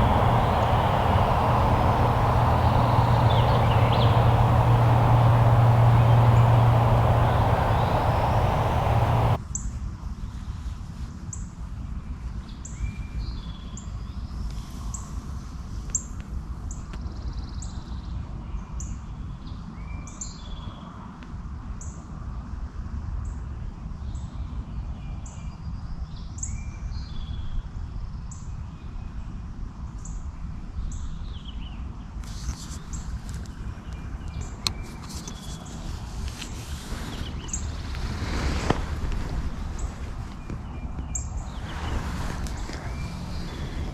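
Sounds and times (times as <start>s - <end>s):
loud noise with low hum: 0.0s - 9.4s
songbirds singing: 0.0s - 9.4s
steady low rumble: 0.0s - 9.4s.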